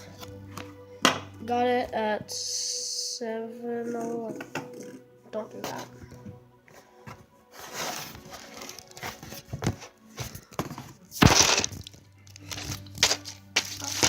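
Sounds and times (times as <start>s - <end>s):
crinkling and rustling: 5.6s - 14.0s.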